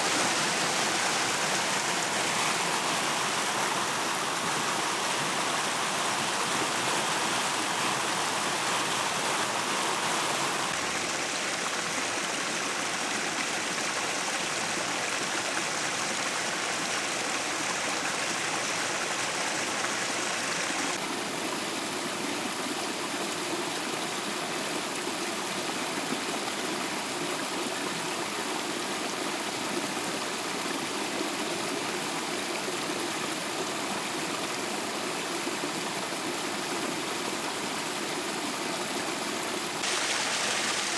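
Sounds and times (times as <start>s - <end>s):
water cascading over rock: 0.0s - 21.0s, 39.7s - 40.9s.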